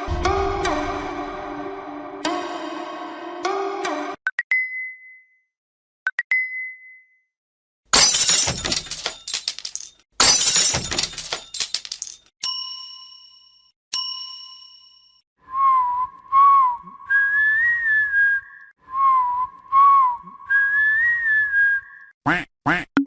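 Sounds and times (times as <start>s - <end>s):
whistled notification phrase: 15.5s - 22.1s.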